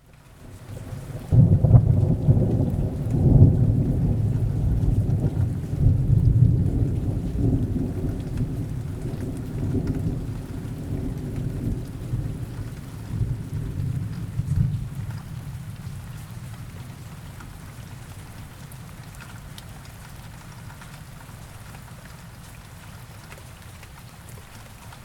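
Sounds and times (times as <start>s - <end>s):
steady rain: 0.0s - 25.0s
rolling thunder: 0.8s - 16.0s.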